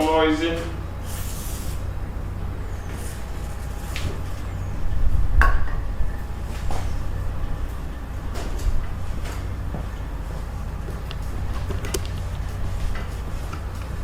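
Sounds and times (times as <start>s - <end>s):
low rumble: 1.8s - 14.0s.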